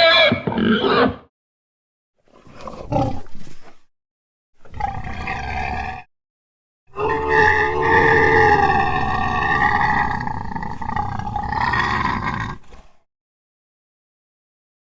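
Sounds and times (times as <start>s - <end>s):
monster roars: 6.9s - 12.6s.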